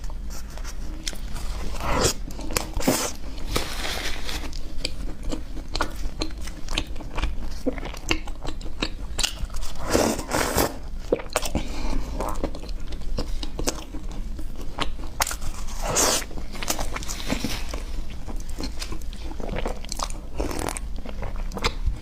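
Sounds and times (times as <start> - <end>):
person chewing crunchy bread: 0.1 - 22.0.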